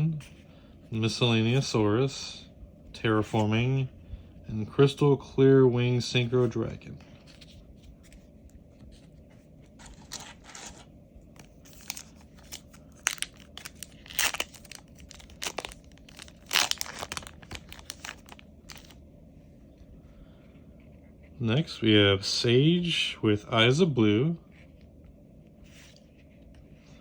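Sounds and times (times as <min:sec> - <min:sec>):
cards rustling: 0:07.0 - 0:19.0
foil wrapper tearing and crinkling: 0:11.4 - 0:19.0.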